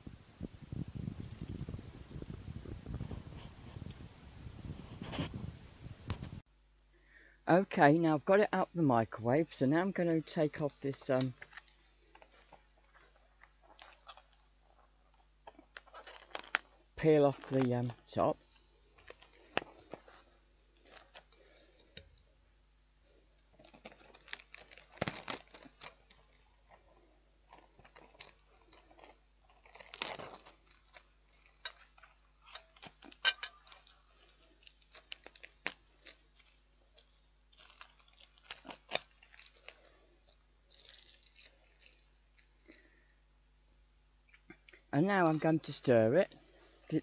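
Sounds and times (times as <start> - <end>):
plastic crinkling and clicking: 10.6 - 21.4, 23.4 - 26.9, 27.5 - 42.9.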